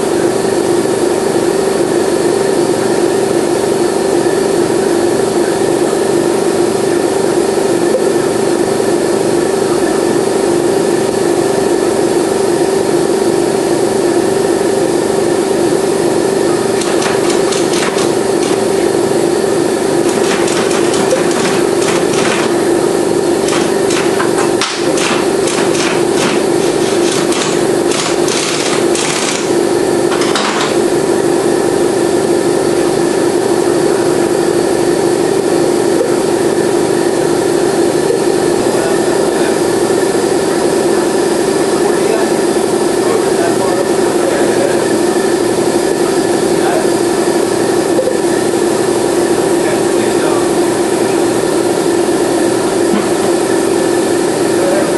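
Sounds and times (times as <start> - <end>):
loud mechanical drone: 0.0 - 54.9
hand tools clicking on metal: 16.8 - 18.7, 20.1 - 22.5, 23.4 - 29.5.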